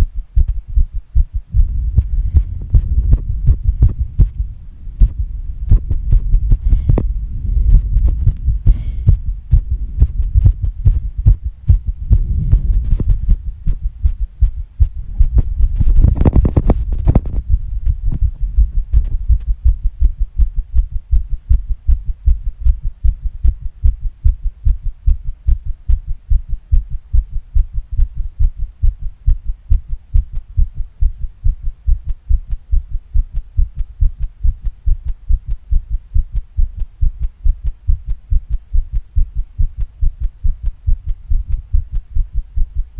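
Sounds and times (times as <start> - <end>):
fast heartbeat: 0.0 - 42.9
heavy breaths: 1.6 - 4.0, 6.4 - 9.8.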